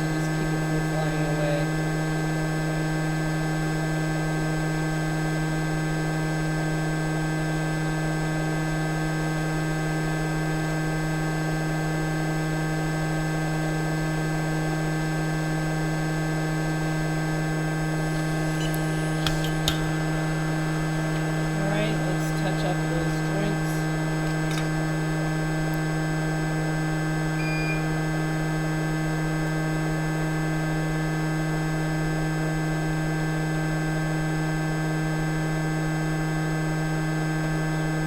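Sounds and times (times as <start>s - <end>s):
electrical hum: 0.0s - 4.2s, 15.6s - 30.7s
hot air station blowing: 16.7s - 25.8s.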